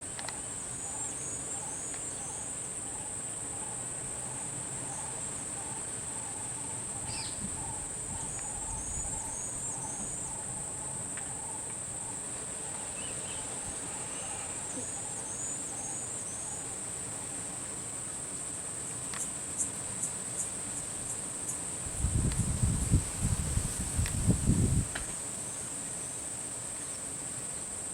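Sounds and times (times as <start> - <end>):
high-pitched insect drone: 0.1 - 17.4.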